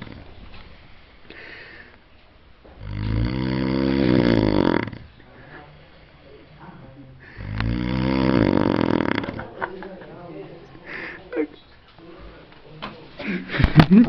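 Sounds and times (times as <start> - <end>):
loud snoring: 2.8 - 5.1, 7.4 - 9.4.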